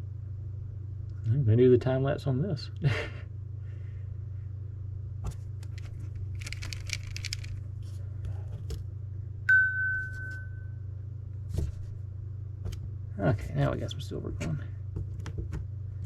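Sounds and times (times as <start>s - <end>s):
steady low hum: 0.0s - 16.0s
brief rattle: 5.6s - 7.6s
handling clicks: 5.6s - 7.6s
clear ringing ping: 9.5s - 10.9s.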